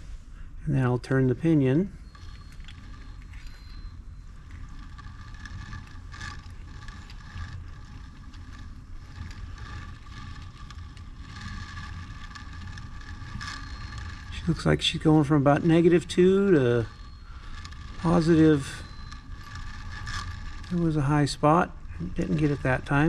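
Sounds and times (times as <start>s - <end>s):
gears meshing rumble: 0.0s - 23.0s.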